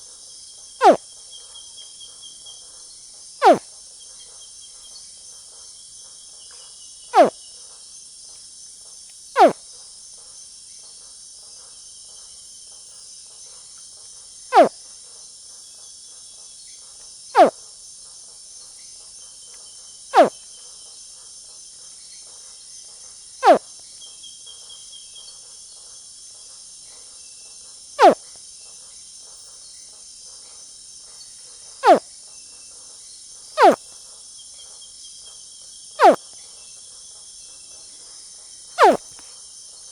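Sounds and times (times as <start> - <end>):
crickets chirping: 0.4 - 1.0, 9.4 - 9.6, 14.5 - 14.7, 17.4 - 18.0, 20.2 - 20.4, 28.0 - 28.2, 31.8 - 32.1, 33.0 - 33.8, 35.0 - 36.2, 38.2 - 39.7
young crocodile chirping: 9.4 - 9.6, 38.8 - 39.0.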